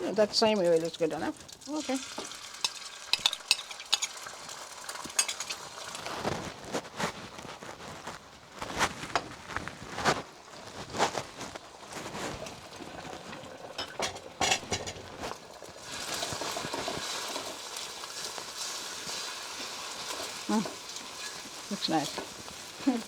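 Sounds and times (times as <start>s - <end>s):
eggs sizzling in oil: 0.0s - 23.0s
metal utensil clinking on pan: 2.1s - 4.3s, 4.9s - 5.7s, 13.8s - 15.2s, 20.6s - 22.3s.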